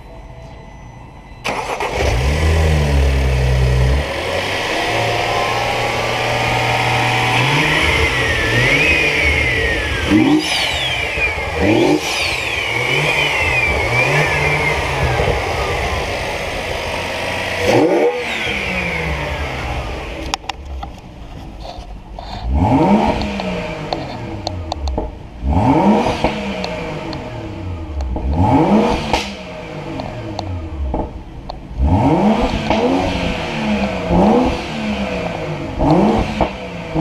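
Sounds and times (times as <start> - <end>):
high whine: 0.0 - 21.8
car engine starting and revving: 1.4 - 37.0.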